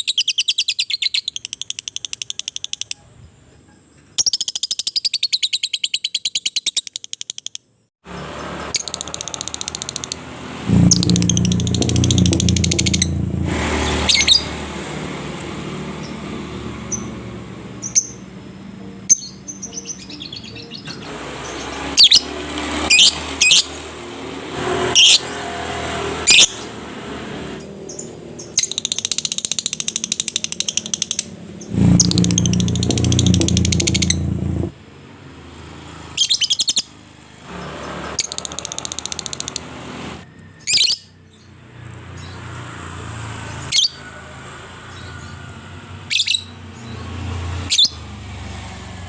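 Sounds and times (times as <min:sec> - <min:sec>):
bird chirps sliding down: 0:08.4 - 0:14.6, 0:20.6 - 0:23.8, 0:27.9 - 0:34.7.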